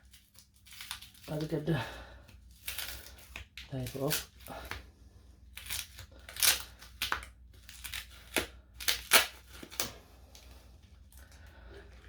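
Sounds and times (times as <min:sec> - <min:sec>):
adhesive tape pulled off: 0:05.5 - 0:10.0.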